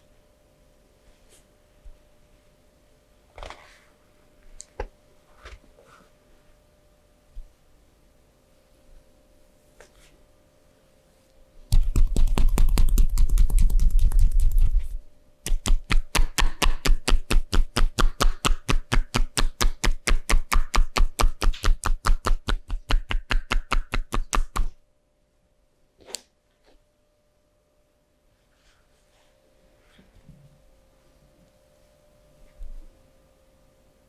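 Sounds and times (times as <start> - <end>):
rapid taps: 11.7 - 14.8.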